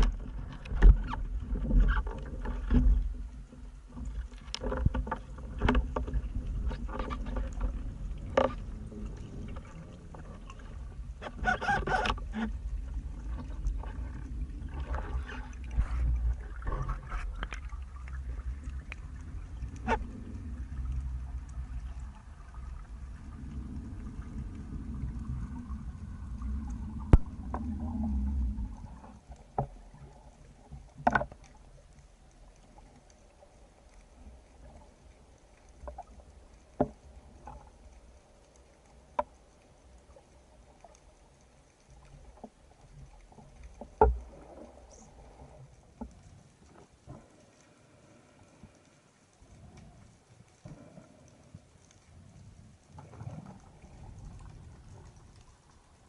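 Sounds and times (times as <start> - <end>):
sharp underwater clicks and knocks: 0.0 - 22.0, 26.5 - 33.2, 35.7 - 39.9, 40.6 - 47.8
underwater water rushing: 0.0 - 56.0.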